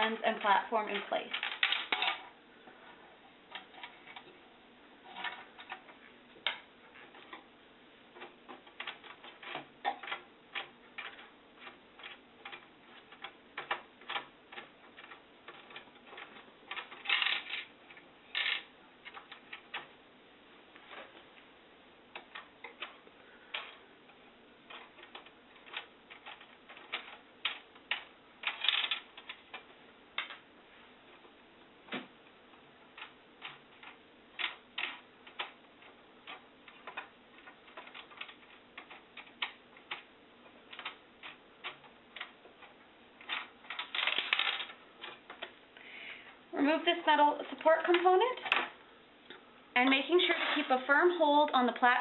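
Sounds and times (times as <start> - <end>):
scraping rustles: 49.9 - 51.4.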